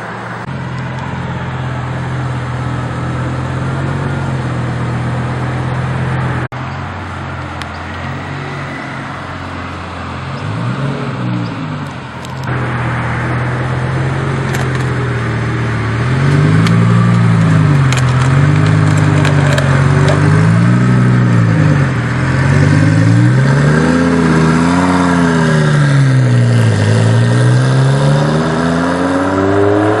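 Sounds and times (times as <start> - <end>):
sports car engine revving: 7.1 - 30.0.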